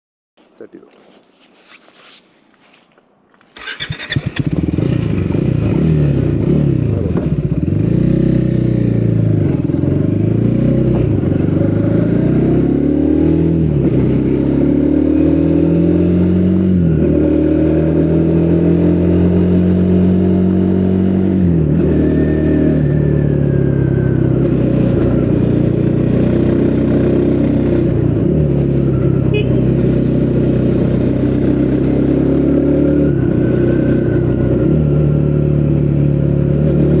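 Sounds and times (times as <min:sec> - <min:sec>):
motorcycle engine revving: 0:03.6 - 0:37.0.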